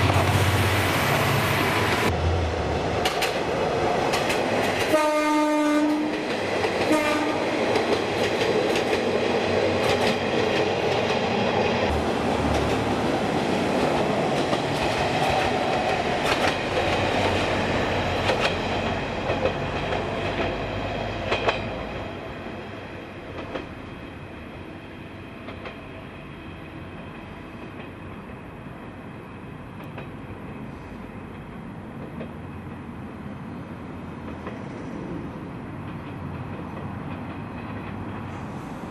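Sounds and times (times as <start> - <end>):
train wheels clattering: 3.0 - 5.2, 5.9 - 22.1
train horn: 4.9 - 6.2, 6.8 - 7.7.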